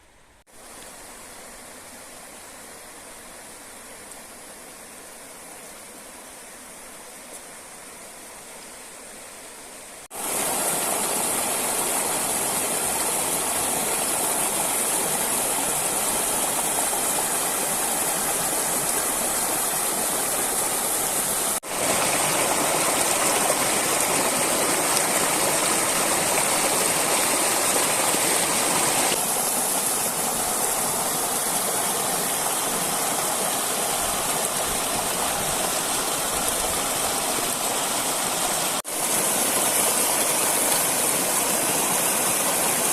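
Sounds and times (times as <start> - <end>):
river water rushing: 9.3 - 42.9.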